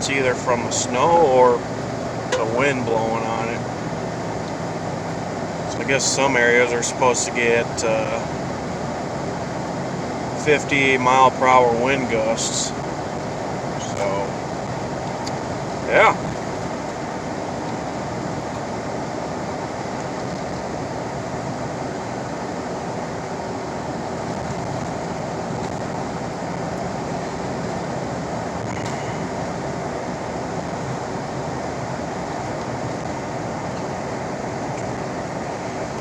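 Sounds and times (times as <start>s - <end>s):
tyres rushing on road: 0.0s - 36.0s
wind noise against car: 1.6s - 5.8s, 12.8s - 36.0s.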